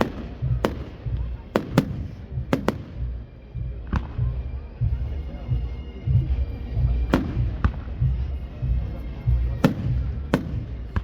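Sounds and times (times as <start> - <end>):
fireworks bangs: 0.0 - 3.1.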